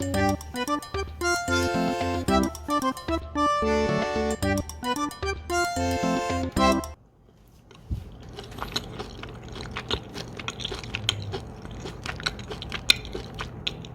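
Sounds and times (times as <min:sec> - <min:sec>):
background music: 0:00.0 - 0:07.0
utensils clicking on food: 0:08.2 - 0:13.9.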